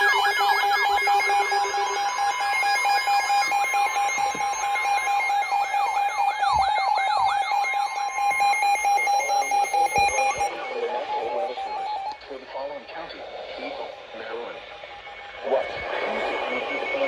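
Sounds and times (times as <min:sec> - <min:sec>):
stepped beeping tones: 0:00.0 - 0:12.2
steady held alarm tones: 0:00.0 - 0:12.4, 0:13.3 - 0:17.0.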